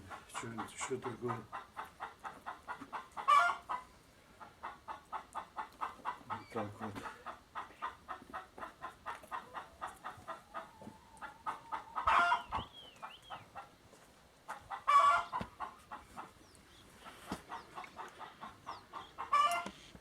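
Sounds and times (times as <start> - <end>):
starling falling whistles: 12.4 - 13.3.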